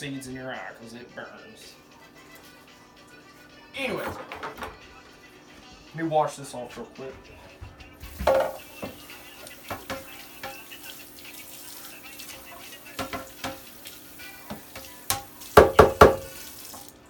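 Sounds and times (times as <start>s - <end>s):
kitchen tap running: 8.0s - 17.0s.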